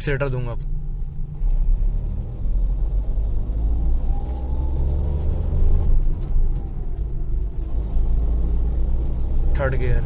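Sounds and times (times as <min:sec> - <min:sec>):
car engine accelerating: 0:00.6 - 0:10.0.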